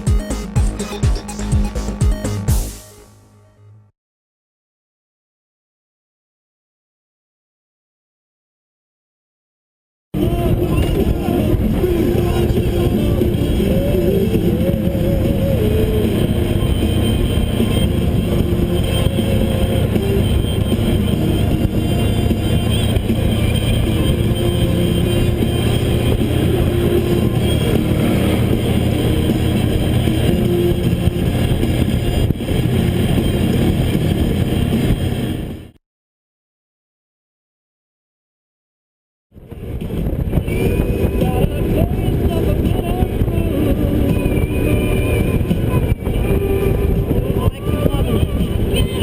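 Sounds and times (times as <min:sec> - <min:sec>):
motorcycle engine running: 0:10.2 - 0:35.8
road and wind noise: 0:10.2 - 0:35.8, 0:39.4 - 0:49.0.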